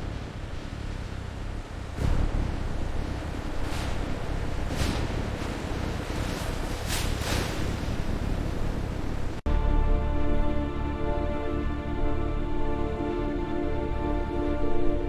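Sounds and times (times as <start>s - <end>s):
rushing noise with whooshes: 0.0s - 9.4s
low rumble: 0.0s - 15.0s
music with sustained tones: 9.5s - 15.0s.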